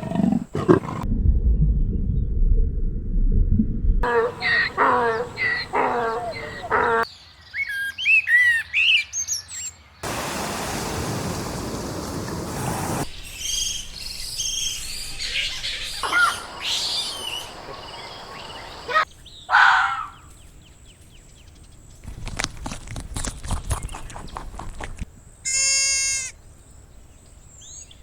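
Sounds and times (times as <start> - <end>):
high chirping animal calls: 4.0 - 7.1, 13.2 - 20.4
steady hiss: 10.0 - 18.9.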